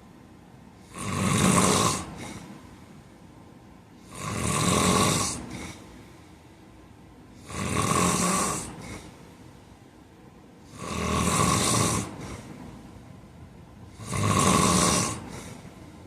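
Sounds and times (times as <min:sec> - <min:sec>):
man snoring loudly: 0:00.8 - 0:02.4, 0:04.0 - 0:05.8, 0:07.4 - 0:09.1, 0:10.6 - 0:12.5, 0:13.9 - 0:15.6.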